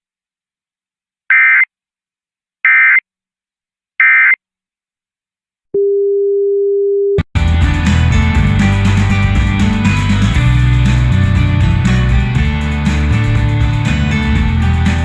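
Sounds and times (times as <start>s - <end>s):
music: 7.4s - 15.0s.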